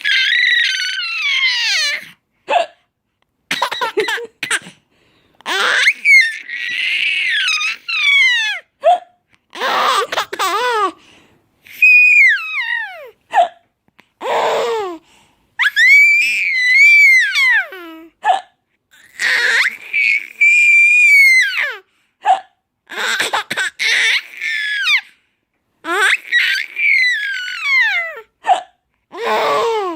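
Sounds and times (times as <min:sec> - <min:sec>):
baby squealing laughter: 0:00.0 - 0:02.1, 0:05.5 - 0:09.0, 0:11.7 - 0:13.5, 0:15.6 - 0:17.9, 0:22.9 - 0:25.1, 0:25.9 - 0:28.6.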